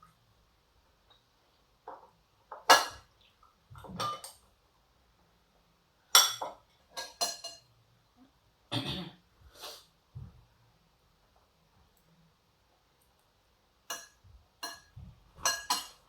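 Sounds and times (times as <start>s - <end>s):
cutlery clinking on dishes: 2.0s - 3.1s, 3.8s - 4.4s, 6.1s - 7.7s, 13.9s - 16.0s.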